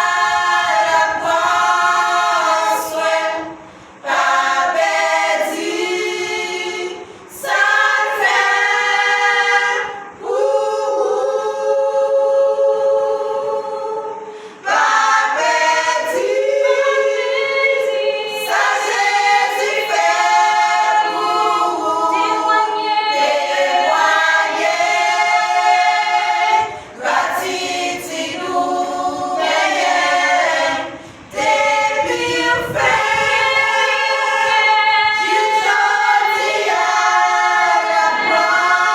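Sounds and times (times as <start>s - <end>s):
choir singing a cappella: 0.0s - 38.9s
singers breathing: 14.2s - 14.7s, 26.6s - 27.0s, 30.9s - 31.3s.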